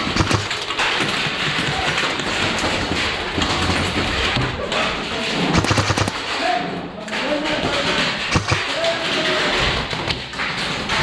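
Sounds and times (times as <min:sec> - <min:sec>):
sharp clicks: 0:00.0 - 0:02.3, 0:05.2 - 0:06.5, 0:07.1 - 0:10.2
noisy background: 0:00.0 - 0:11.0
thumps: 0:00.0 - 0:11.0.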